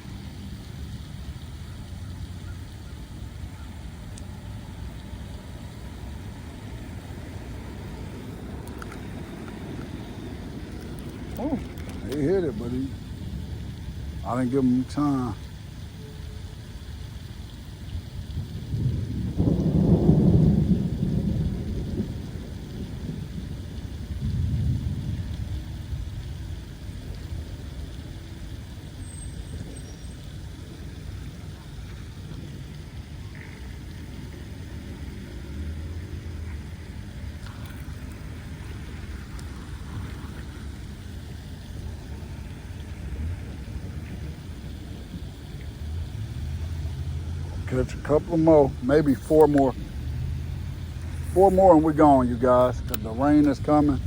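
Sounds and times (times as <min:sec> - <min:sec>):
steady low rumble: 0:00.0 - 0:54.0
faint clicks: 0:08.6 - 0:10.0, 0:10.6 - 0:12.2, 0:52.5 - 0:53.6.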